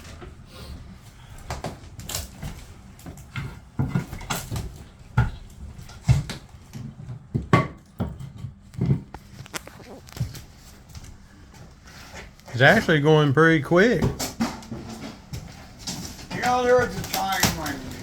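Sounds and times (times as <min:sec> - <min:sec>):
wall panelling being pried and struck: 0:01.2 - 0:10.8, 0:14.0 - 0:18.0.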